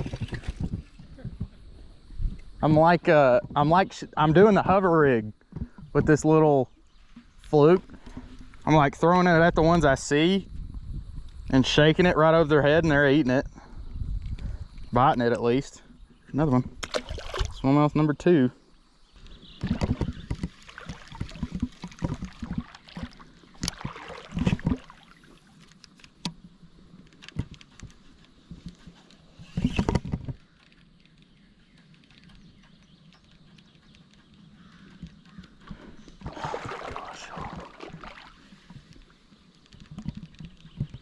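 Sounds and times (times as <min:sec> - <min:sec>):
water splashing and sloshing: 0:00.0 - 0:01.6, 0:16.8 - 0:17.7, 0:19.2 - 0:32.4, 0:34.1 - 0:41.0
flowing water: 0:16.8 - 0:17.6, 0:19.6 - 0:26.4, 0:34.9 - 0:39.3.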